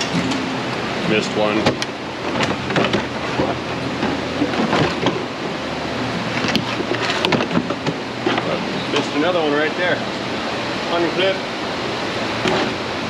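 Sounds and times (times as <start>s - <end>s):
plastic liner rustling and scraping: 1.5s - 5.6s
knocks and clicks: 1.6s - 5.6s, 6.3s - 8.5s.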